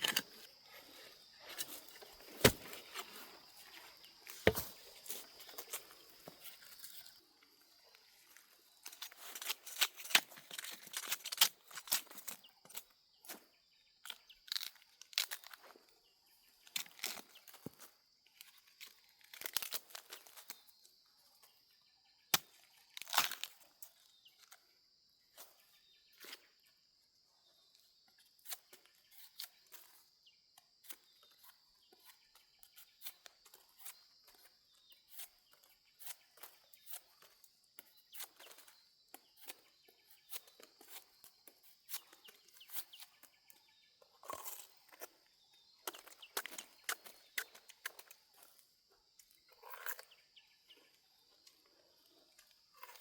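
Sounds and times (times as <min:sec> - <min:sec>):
twigs snapping: 0:01.5 - 0:03.5.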